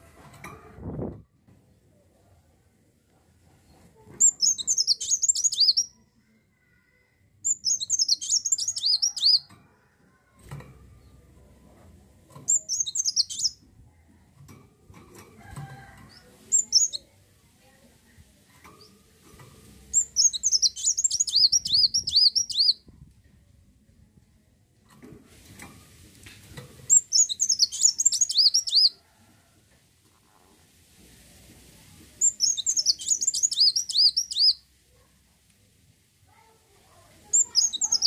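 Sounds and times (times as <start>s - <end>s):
bird twittering: 4.2s - 5.9s, 7.5s - 9.4s, 12.5s - 13.6s, 19.9s - 22.8s, 26.9s - 29.0s, 32.2s - 34.6s, 37.3s - 38.0s.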